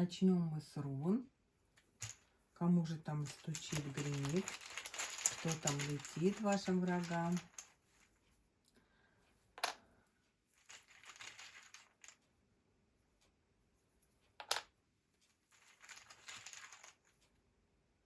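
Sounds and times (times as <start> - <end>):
hands rustling pieces: 3.1 - 8.3, 10.5 - 12.2, 15.5 - 17.1
rune pieces clicking: 3.3 - 7.8.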